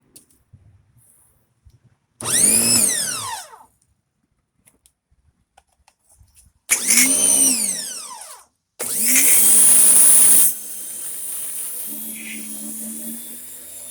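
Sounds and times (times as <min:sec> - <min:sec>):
motor winding down whine: 0:02.2 - 0:03.6, 0:06.7 - 0:13.9
pressure washer motor running: 0:08.8 - 0:13.9.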